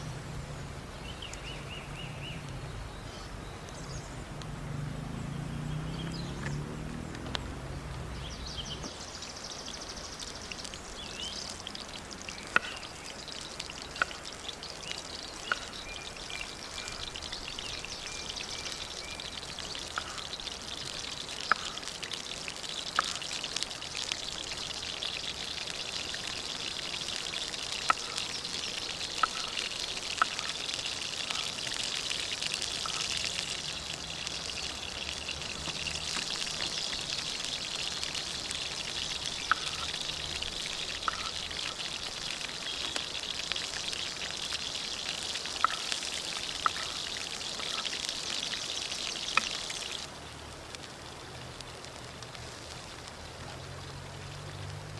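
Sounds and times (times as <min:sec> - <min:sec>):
river water flowing: 0:00.0 - 0:54.9
sharp pops: 0:12.5 - 0:12.8.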